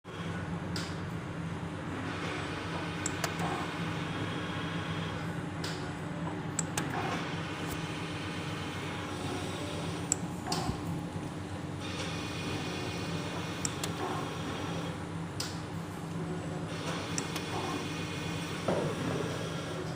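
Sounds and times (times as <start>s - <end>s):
steady machine hum: 0.0s - 19.9s.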